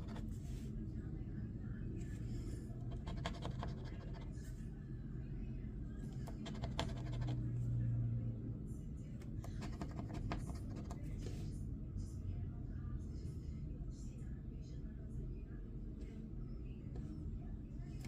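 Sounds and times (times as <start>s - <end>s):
scratching a scratch-off ticket: 0.0s - 0.6s, 2.4s - 4.5s, 6.0s - 7.5s, 9.2s - 11.4s.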